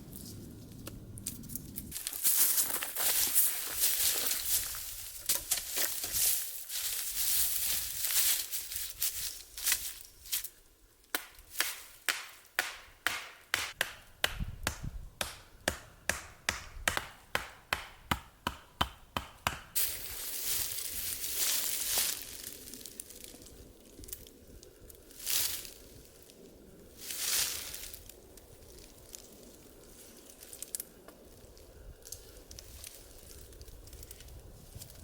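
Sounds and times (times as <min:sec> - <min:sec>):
rustling and scraping: 0:00.1 - 0:10.5.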